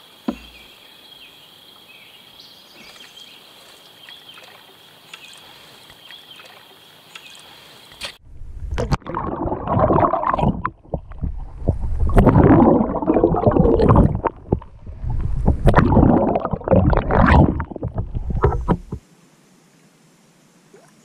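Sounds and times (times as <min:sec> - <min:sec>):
sharp knocks: 0:00.2 - 0:00.6
paddle splashing water: 0:02.7 - 0:08.2, 0:15.4 - 0:19.0.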